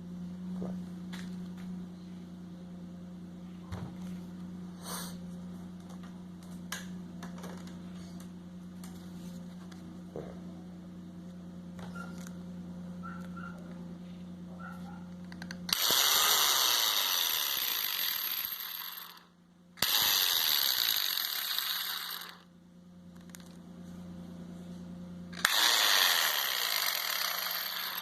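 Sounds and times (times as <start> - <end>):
steady low hum: 0.0 - 28.0
saw motor harsh grinding: 15.7 - 19.2, 19.8 - 22.5, 25.4 - 28.0.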